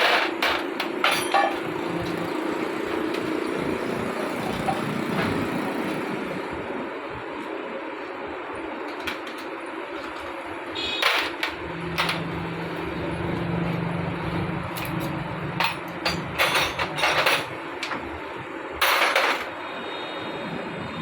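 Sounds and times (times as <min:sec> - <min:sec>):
metal tools clanking and scraping: 0:00.0 - 0:02.2, 0:14.7 - 0:18.0.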